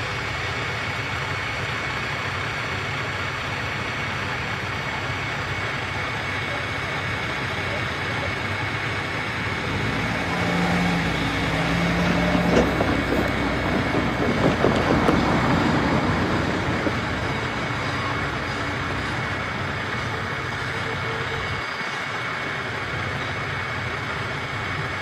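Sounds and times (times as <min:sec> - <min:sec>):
diesel railcar engine running: 0:00.0 - 0:25.0
knocks and clacks: 0:10.4 - 0:19.2.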